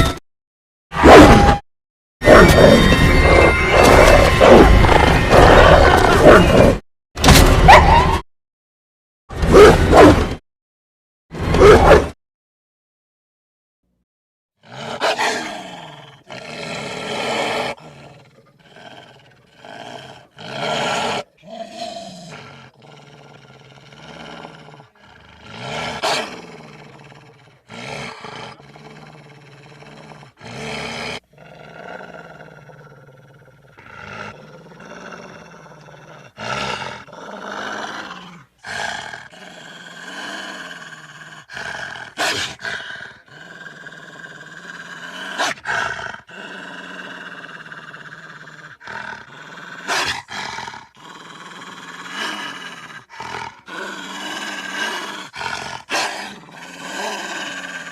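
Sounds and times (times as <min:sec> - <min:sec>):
wolves growling: 0:02.2 - 0:06.8, 0:14.6 - 0:57.9
wolves snarling: 0:14.6 - 0:57.9.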